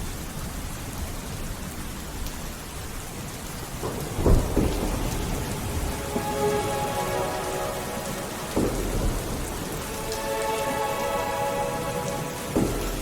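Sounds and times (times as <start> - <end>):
steady rainfall: 0.0 - 13.0
low thunderclap: 3.4 - 10.8
held musical tones: 5.7 - 13.0.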